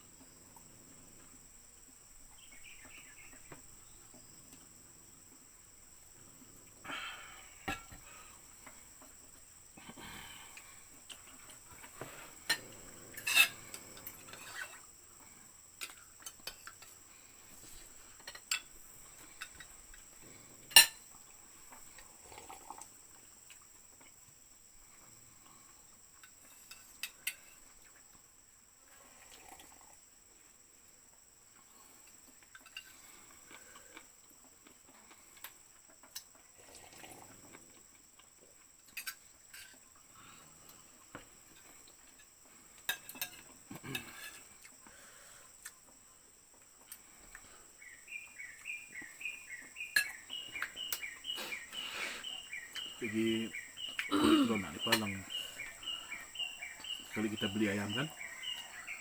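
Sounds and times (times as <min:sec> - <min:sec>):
cutlery clinking on plates: 0:12.4 - 0:14.8, 0:20.7 - 0:21.1, 0:42.9 - 0:44.5, 0:49.9 - 0:51.0.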